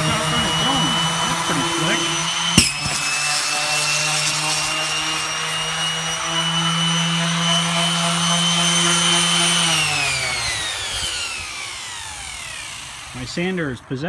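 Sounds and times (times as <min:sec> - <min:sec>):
electric sander running: 0:00.0 - 0:14.0.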